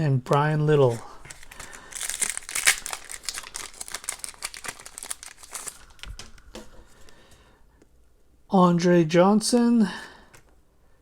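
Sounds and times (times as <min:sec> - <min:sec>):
wrapper crinkling and tearing: 0:00.9 - 0:06.4.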